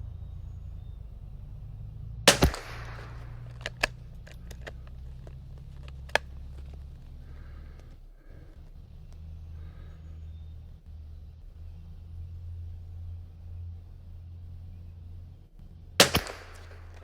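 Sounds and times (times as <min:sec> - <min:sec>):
steady low rumble: 0:00.0 - 0:17.0
rifle shot with echo: 0:02.3 - 0:04.0, 0:16.0 - 0:17.0
sharp clicks: 0:02.3 - 0:09.3, 0:15.6 - 0:17.0.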